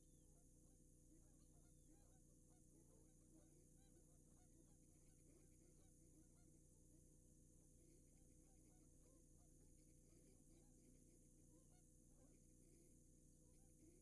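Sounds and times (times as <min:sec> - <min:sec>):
background hum and hiss: 0:00.0 - 0:14.0.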